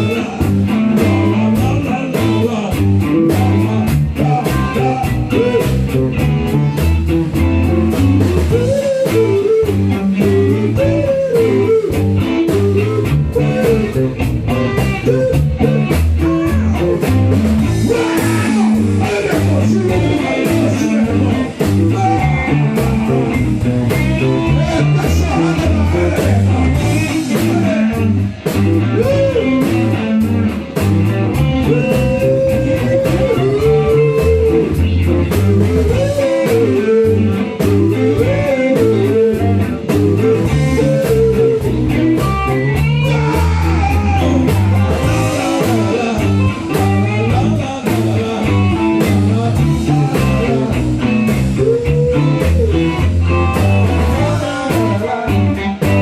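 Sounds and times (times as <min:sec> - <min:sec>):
bass: 0:00.0 - 0:56.0
lead guitar melody: 0:00.0 - 0:56.0
steady drum beat: 0:00.0 - 0:56.0.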